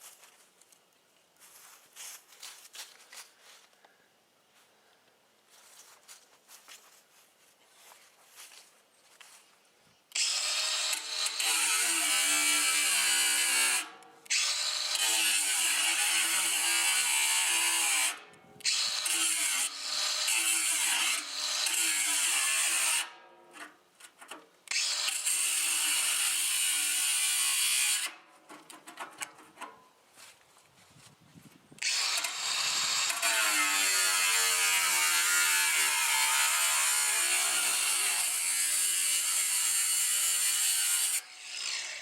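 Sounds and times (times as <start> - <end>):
angle grinder cutting steel: 10.1 - 23.4, 24.7 - 28.2, 31.8 - 42.0.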